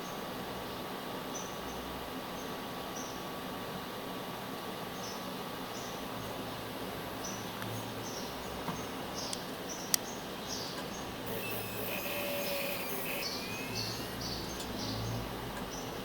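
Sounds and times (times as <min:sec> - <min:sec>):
hard drive chirping and scratching: 0:10.6 - 0:16.0.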